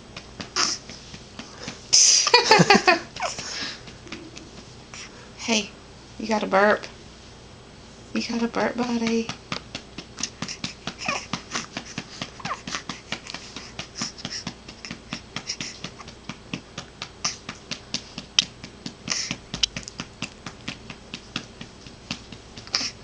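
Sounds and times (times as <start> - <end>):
patting on baby's back: 8.7 - 23.0.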